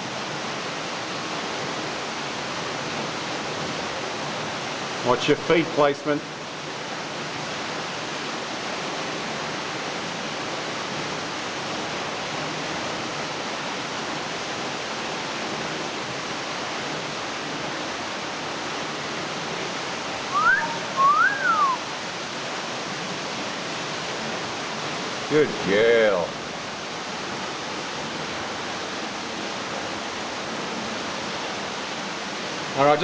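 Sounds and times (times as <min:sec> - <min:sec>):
waterfall pouring into pool: 0:00.0 - 0:33.0
two-note whistle: 0:20.3 - 0:21.9.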